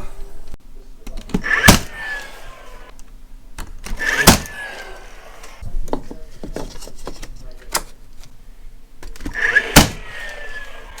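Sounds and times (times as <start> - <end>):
staple gun firing: 1.3 - 2.0, 3.8 - 4.6.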